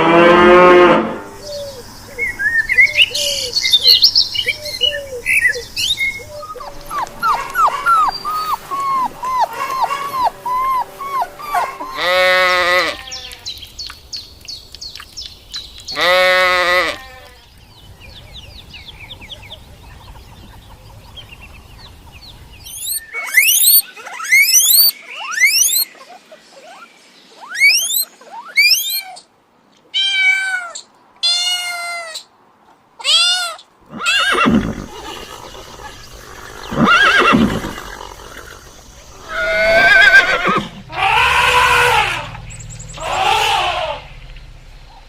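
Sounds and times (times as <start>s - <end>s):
animal calls: 1.4s - 13.6s, 22.6s - 29.3s, 33.0s - 45.0s.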